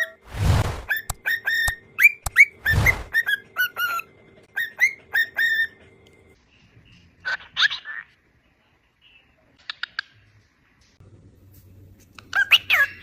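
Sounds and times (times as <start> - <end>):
brief rush of noise: 0.3 - 0.9, 2.6 - 3.1
parrot whistling chirps: 0.8 - 5.8.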